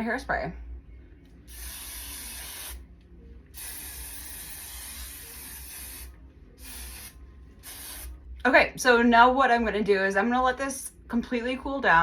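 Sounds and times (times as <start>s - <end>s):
hairspray can hissing: 1.5s - 2.8s, 3.6s - 8.2s.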